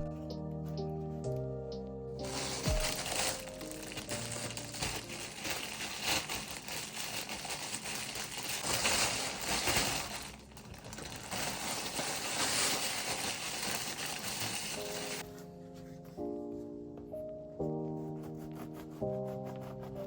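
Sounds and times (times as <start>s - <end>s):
crinkling and crackling: 2.2s - 15.5s.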